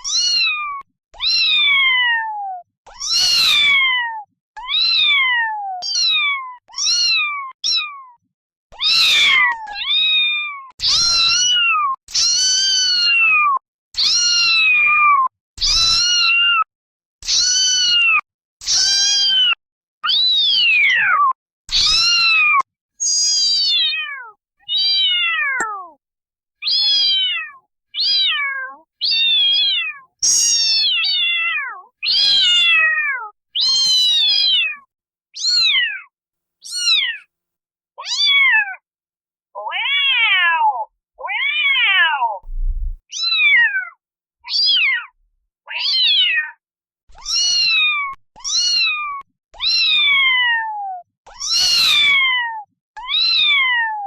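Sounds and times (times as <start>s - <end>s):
kittens meowing: 0.0s - 8.0s, 8.8s - 16.6s, 20.2s - 26.0s, 26.6s - 34.8s, 36.7s - 37.2s, 39.6s - 43.7s, 51.3s - 53.8s.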